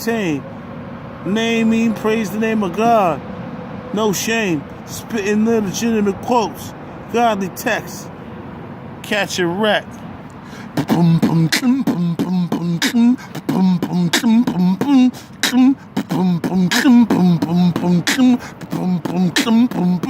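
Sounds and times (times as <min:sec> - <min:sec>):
beatboxing: 0:10.3 - 0:20.0
hummed bass line: 0:10.8 - 0:20.0.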